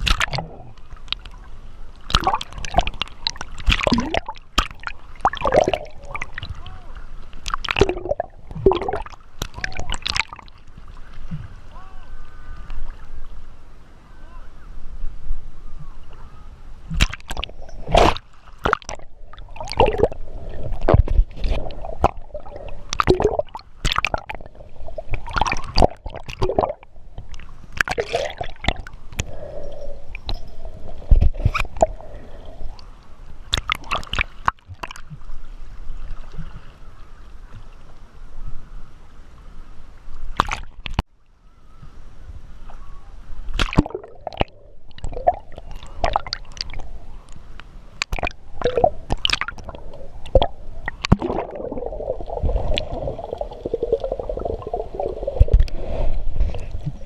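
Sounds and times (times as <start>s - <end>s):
splashes and knocks: 0.0s - 0.4s, 2.1s - 6.6s, 16.9s - 19.0s, 23.0s - 24.4s, 43.6s - 44.0s, 50.3s - 51.8s
water sloshing and gurgling: 0.0s - 11.8s, 16.8s - 38.0s, 40.1s - 41.1s, 43.4s - 57.0s.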